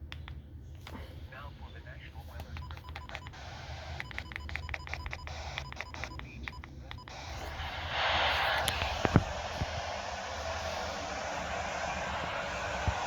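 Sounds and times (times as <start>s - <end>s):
radio static hiss: 0.9s - 13.0s
electronic touch-tone beeps: 2.6s - 7.5s
sharp clicks: 4.0s - 7.2s.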